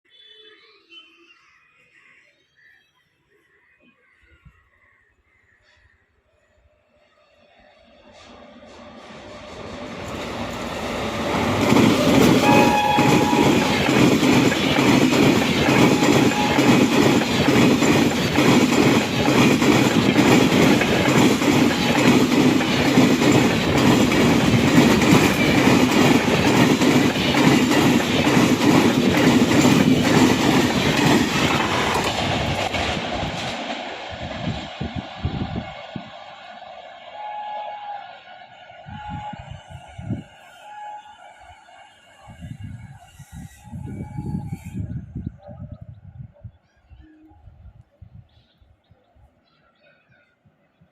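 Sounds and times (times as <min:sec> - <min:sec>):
train wheels clattering over rail joints: 0:09.2 - 0:34.0
brief high tone: 0:12.4 - 0:13.8.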